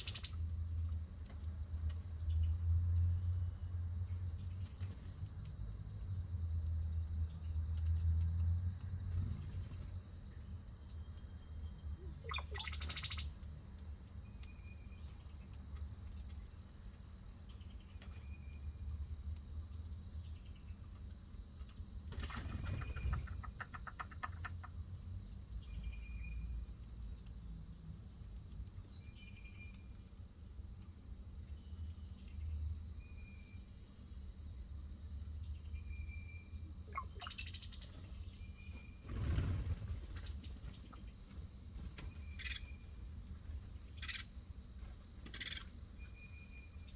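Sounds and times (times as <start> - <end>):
bird chirping: 0.0 - 0.4, 3.6 - 18.8, 20.2 - 27.3, 31.2 - 46.9
high bird trill: 0.0 - 0.4, 12.1 - 13.3, 36.9 - 38.0, 42.3 - 42.8, 44.0 - 44.3, 45.3 - 46.4
wings fluttering: 22.1 - 24.6, 39.0 - 42.6, 44.8 - 45.7.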